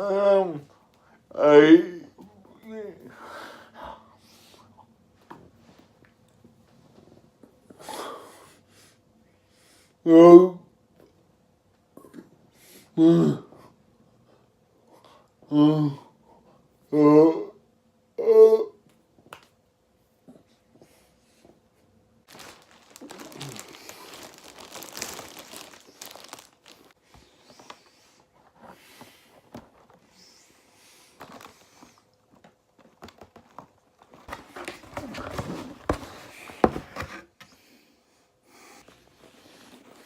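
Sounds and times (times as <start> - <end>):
crinkling rustling handling noise: 22.3 - 27.8, 31.1 - 37.2.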